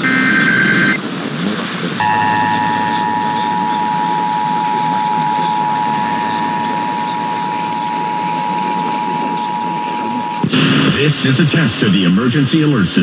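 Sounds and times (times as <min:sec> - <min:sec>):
two-tone attention signal: 0:00.0 - 0:01.0, 0:02.0 - 0:10.5
warbling digital chirp: 0:02.0 - 0:10.4.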